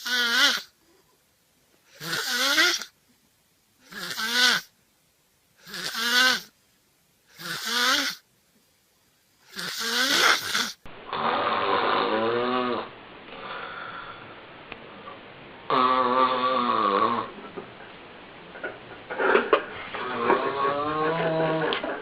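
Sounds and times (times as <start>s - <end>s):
loud snoring: 0.0s - 0.7s, 2.0s - 2.9s, 3.9s - 4.7s, 5.6s - 6.5s, 7.4s - 8.2s, 9.5s - 13.7s, 15.7s - 17.3s, 19.9s - 21.8s
quiet breathing: 13.3s - 14.6s.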